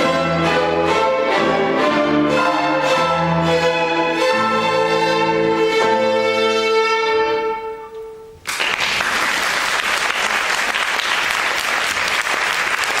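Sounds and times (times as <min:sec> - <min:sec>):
audience applause: 0:08.4 - 0:13.0.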